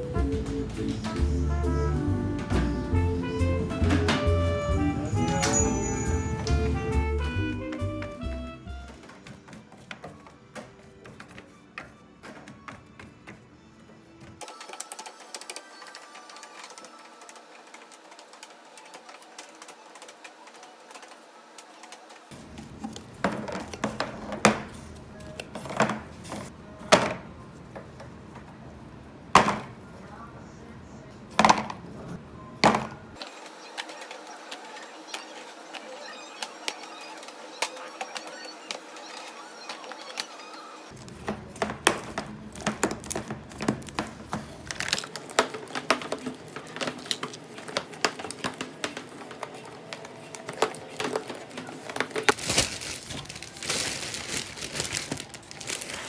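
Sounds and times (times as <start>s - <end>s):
soft background music: 0.0s - 21.2s.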